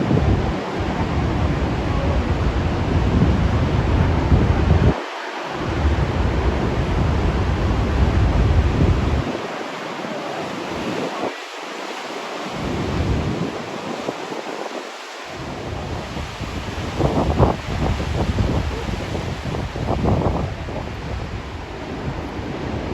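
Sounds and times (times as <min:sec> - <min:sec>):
ocean waves crashing: 0:00.0 - 0:22.9
wind buffeting microphone: 0:00.0 - 0:22.9.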